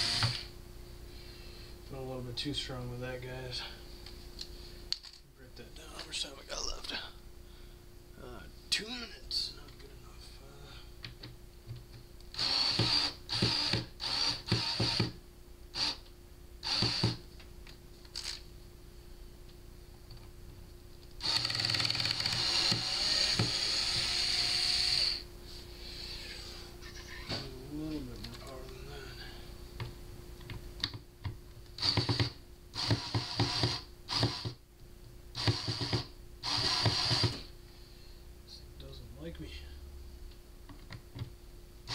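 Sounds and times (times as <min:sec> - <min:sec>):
power screwdriver motor bursts: 0:12.3 - 0:15.1, 0:16.6 - 0:17.2, 0:21.2 - 0:25.2, 0:31.8 - 0:34.6, 0:35.4 - 0:37.5
power screwdriver ratcheting: 0:21.2 - 0:25.2.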